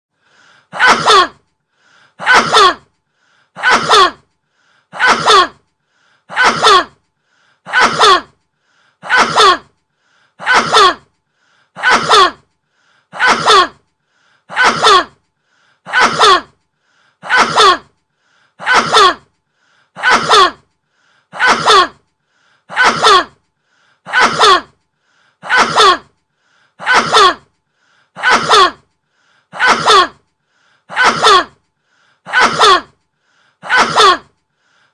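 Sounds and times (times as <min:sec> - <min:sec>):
man sneezing: 0:00.8 - 0:01.4, 0:02.2 - 0:02.8, 0:03.6 - 0:04.2, 0:05.0 - 0:05.6, 0:06.3 - 0:06.9, 0:07.7 - 0:08.3, 0:09.0 - 0:09.7, 0:10.4 - 0:11.0, 0:11.8 - 0:12.4, 0:13.2 - 0:13.8, 0:14.5 - 0:15.1, 0:15.9 - 0:16.5, 0:17.2 - 0:17.9, 0:18.6 - 0:19.2, 0:20.0 - 0:20.6, 0:21.4 - 0:22.0, 0:22.7 - 0:23.3, 0:24.1 - 0:24.7, 0:25.4 - 0:26.1, 0:26.8 - 0:27.4, 0:28.2 - 0:28.8, 0:29.6 - 0:30.2, 0:30.9 - 0:31.5, 0:32.3 - 0:32.9, 0:33.6 - 0:34.3.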